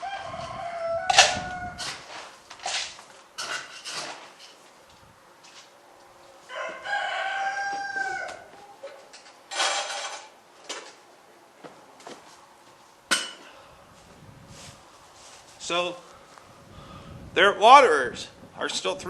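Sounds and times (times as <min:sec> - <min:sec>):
rooster crowing: 0:00.0 - 0:02.2, 0:06.4 - 0:09.2
short rustling: 0:13.9 - 0:16.6.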